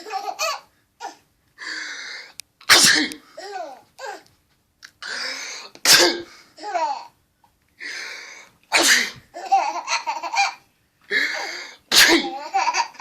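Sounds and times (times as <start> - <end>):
person sneezing: 2.7 - 3.2, 5.0 - 6.4, 8.7 - 9.2, 11.2 - 12.4.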